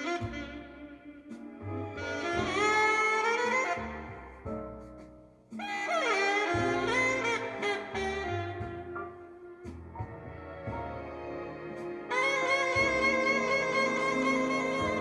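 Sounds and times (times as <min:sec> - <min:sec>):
melody with sliding notes: 0:06.4 - 0:15.0.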